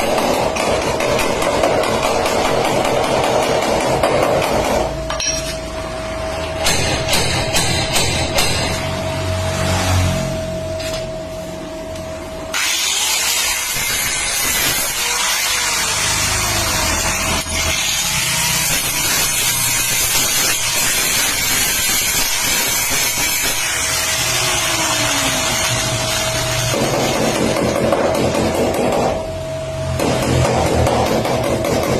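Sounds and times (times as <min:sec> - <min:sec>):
tool giving loud steady hiss: 0:12.5 - 0:28.9.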